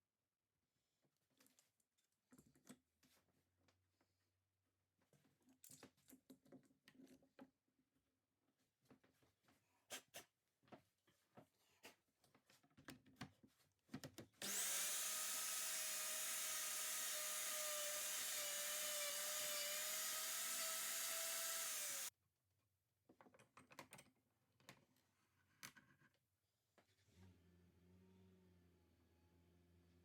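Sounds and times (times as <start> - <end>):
electric router cutting wood: 14.4 - 22.1.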